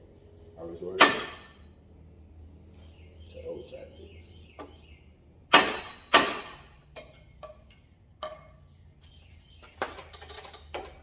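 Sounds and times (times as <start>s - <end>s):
tomahawk striking wood block: 1.0s - 1.6s, 5.5s - 6.8s.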